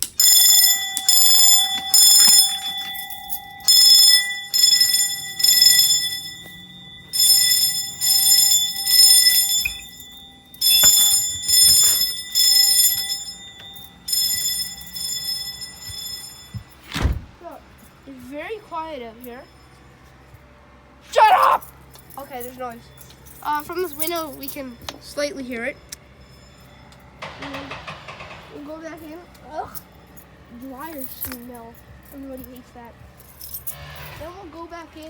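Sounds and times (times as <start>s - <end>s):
steady low ringing tone: 0.0s - 16.8s, 22.0s - 34.8s
fire alarm short blasts: 0.0s - 17.1s
thump: 16.6s - 17.4s.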